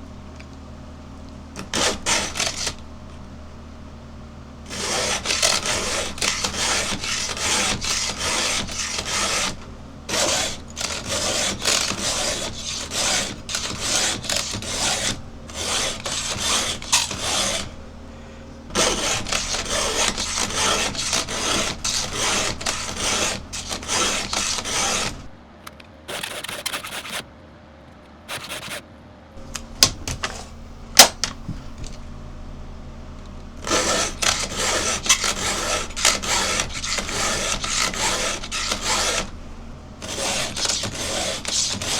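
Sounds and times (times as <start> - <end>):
file rasping on saw chain: 1.6 - 3.8, 4.7 - 25.4, 29.4 - 32.1, 33.5 - 41.9.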